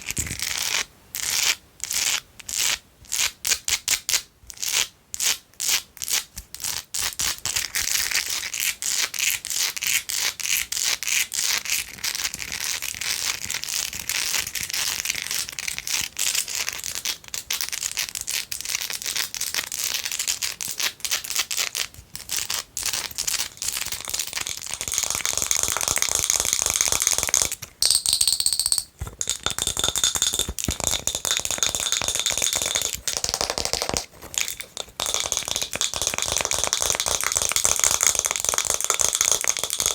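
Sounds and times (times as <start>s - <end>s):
fingernails tapping on glass jar: 27.8s - 37.2s.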